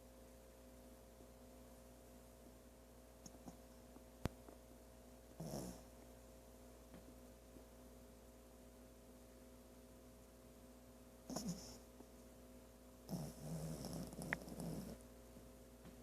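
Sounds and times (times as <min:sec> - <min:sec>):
faint steady hum: 0:00.0 - 0:16.0
pet snoring: 0:05.4 - 0:05.9, 0:11.3 - 0:11.8, 0:13.1 - 0:15.0.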